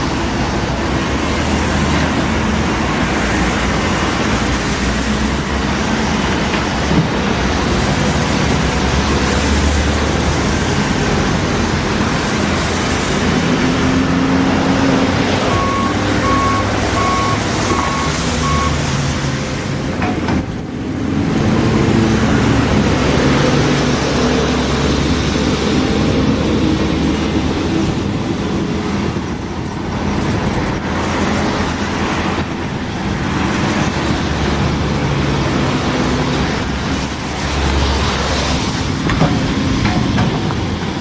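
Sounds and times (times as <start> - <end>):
excavator diesel engine running: 0.0 - 41.0
warning alarm short beeps: 15.5 - 18.8.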